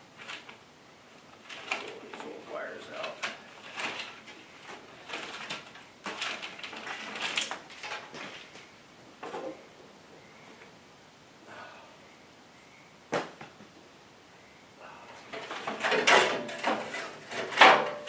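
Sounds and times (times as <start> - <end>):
wiring rustling and scraping: 0.0 - 9.6, 15.2 - 18.0.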